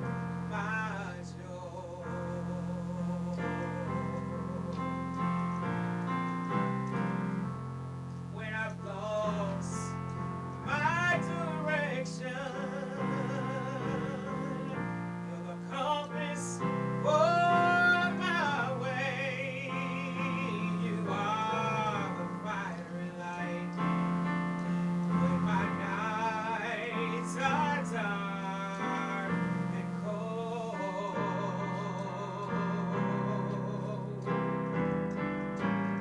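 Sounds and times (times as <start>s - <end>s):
sustained keyboard chords: 0.0s - 36.0s
woman singing gospel: 10.7s - 34.4s.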